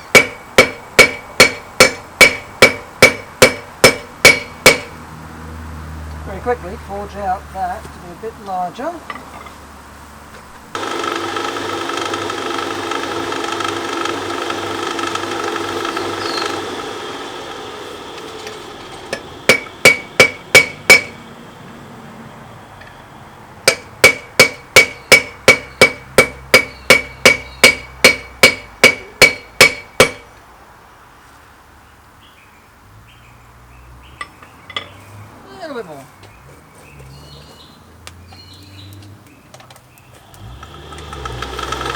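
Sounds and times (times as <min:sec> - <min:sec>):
hammer blows ringing on anvil: 0:00.1 - 0:04.9, 0:19.5 - 0:21.2, 0:23.6 - 0:30.3.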